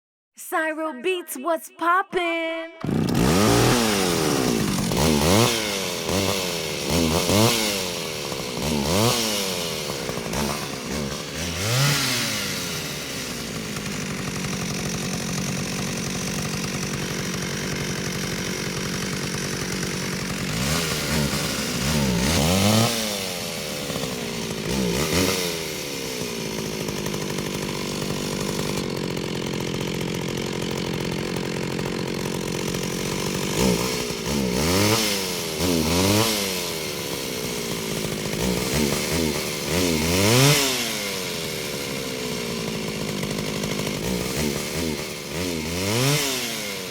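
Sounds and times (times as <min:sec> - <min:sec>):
chainsaw engine revving: 0:02.8 - 0:46.9.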